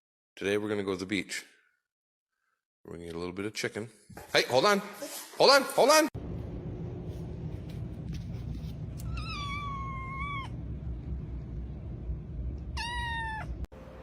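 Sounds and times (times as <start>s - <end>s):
low background rumble: 6.2s - 13.7s
cat meowing: 9.0s - 10.6s, 12.8s - 13.7s.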